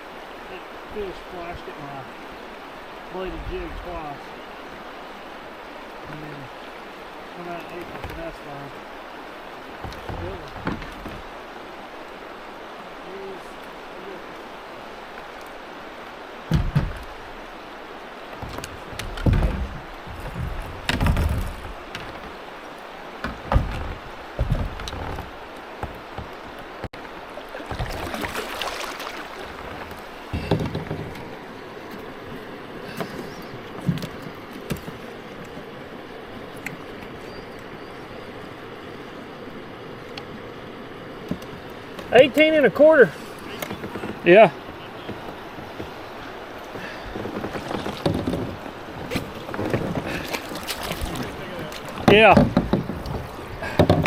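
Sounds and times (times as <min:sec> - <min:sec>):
river water rushing: 0:00.0 - 0:54.0
thumps against kayak hull: 0:09.6 - 0:11.3, 0:16.5 - 0:17.4, 0:18.3 - 0:22.4, 0:23.2 - 0:31.3, 0:32.9 - 0:35.1, 0:43.4 - 0:54.0.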